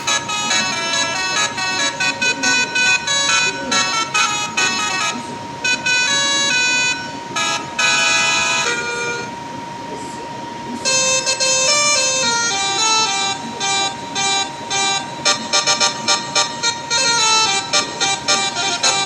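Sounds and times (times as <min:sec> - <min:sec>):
bus horn playing a tune: 0:00.0 - 0:03.5.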